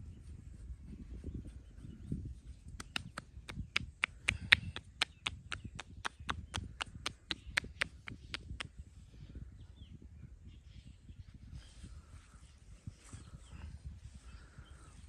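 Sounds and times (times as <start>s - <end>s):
hands slapping body in massage: 2.8s - 8.7s.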